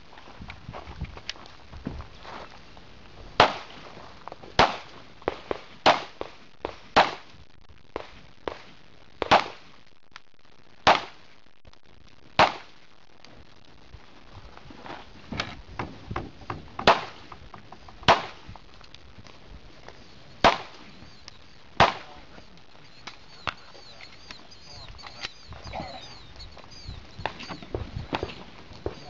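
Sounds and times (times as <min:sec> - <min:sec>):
pistol shots: 0:04.6 - 0:06.3, 0:07.0 - 0:07.3, 0:09.2 - 0:09.6, 0:10.8 - 0:11.2, 0:12.4 - 0:12.7, 0:16.8 - 0:17.2, 0:18.1 - 0:18.4, 0:20.4 - 0:20.8, 0:21.8 - 0:22.2
faint gunshot pops: 0:09.2 - 0:09.6, 0:12.4 - 0:12.7.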